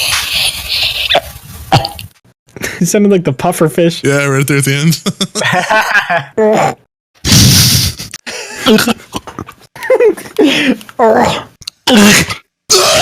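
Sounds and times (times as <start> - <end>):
person making vocal noises: 6.4 - 9.5, 10.4 - 13.0.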